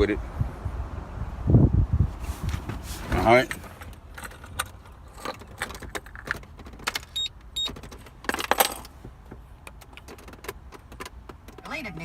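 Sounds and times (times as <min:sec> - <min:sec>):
clicking and rattling handling: 0:03.4 - 0:11.6.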